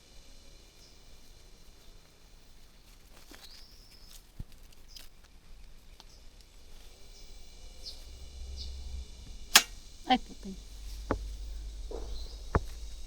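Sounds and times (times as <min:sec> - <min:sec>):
insect hum: 0:00.0 - 0:13.0
dull knock: 0:11.1 - 0:13.0.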